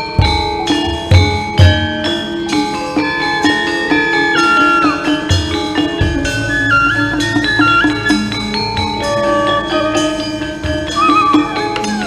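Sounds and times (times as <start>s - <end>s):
gamelan metallophones: 0.0s - 12.0s
sliding melody line: 2.5s - 12.0s.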